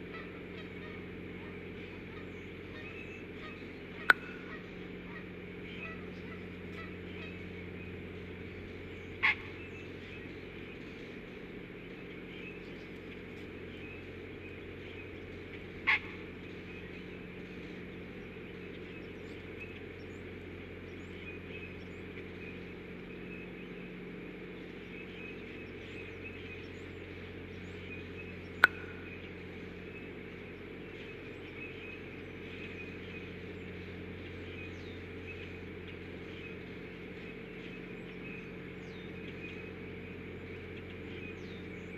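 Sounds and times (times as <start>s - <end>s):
loud bird calls: 0.0s - 41.9s
low hum: 0.0s - 41.9s
sharp click: 4.1s - 4.4s, 28.6s - 29.0s.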